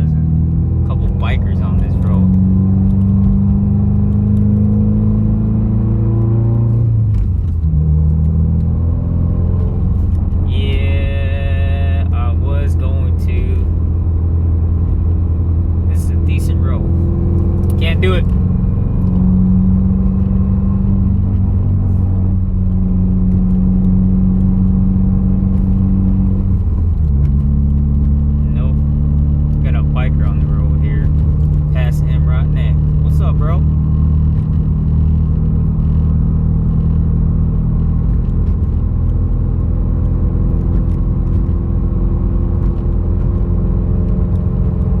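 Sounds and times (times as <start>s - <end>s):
car engine cruising from cabin: 0.0s - 45.0s.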